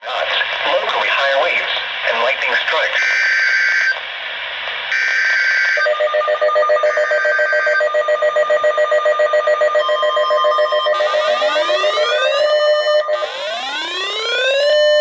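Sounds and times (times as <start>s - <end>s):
steady high tone: 4.9s - 15.0s
pulsing multi-tone attention signal: 5.0s - 15.0s.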